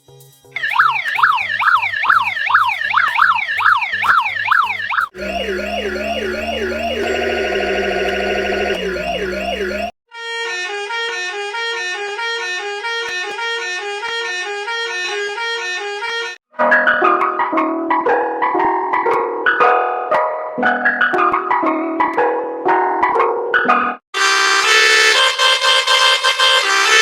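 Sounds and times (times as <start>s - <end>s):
alternating siren pitches: 0.6s - 10.0s, 24.2s - 27.0s
electronic siren sweeps: 0.6s - 10.0s
low drone: 5.2s - 9.9s.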